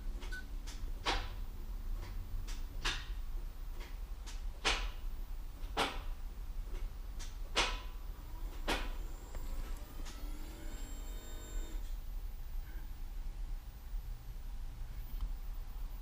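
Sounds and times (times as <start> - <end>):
transmission actuators clicking: 6.7 - 12.0.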